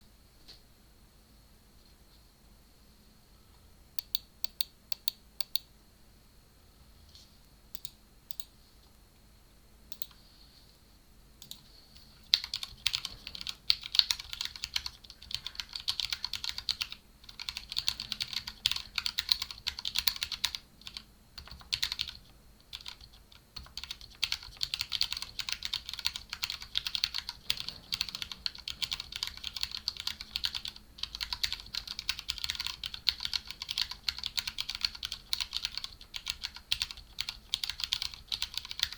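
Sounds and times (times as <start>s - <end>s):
mechanical keyboard typing: 11.4s - 11.6s, 12.3s - 38.9s.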